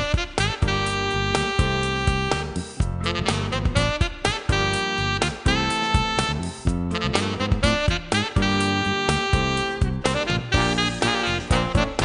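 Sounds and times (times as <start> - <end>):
upbeat jazz with saxophone: 0.0 - 12.0.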